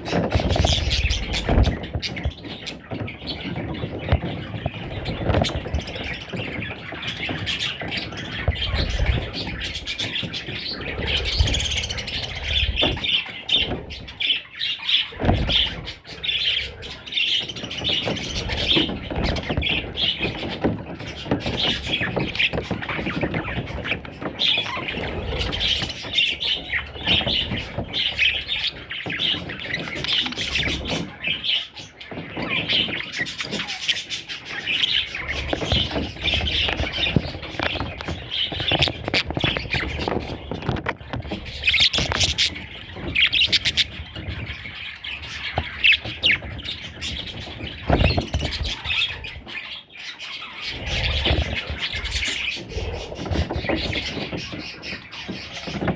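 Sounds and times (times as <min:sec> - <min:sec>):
budgerigar chicks chirping: 0:00.0 - 0:55.9.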